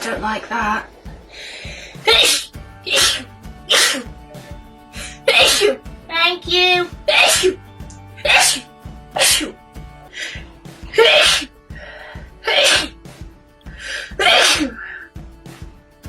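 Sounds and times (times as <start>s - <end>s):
soft breaths: 1.0s - 2.0s
woman sneezing: 2.1s - 4.0s, 5.3s - 5.8s, 8.3s - 8.6s, 11.0s - 11.5s, 12.5s - 12.9s, 14.2s - 15.0s.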